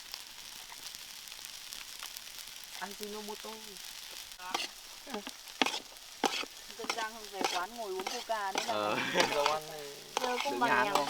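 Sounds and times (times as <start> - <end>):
garlic and onion sizzling in oil: 0.0 - 11.0
stirring clicks: 4.5 - 11.0.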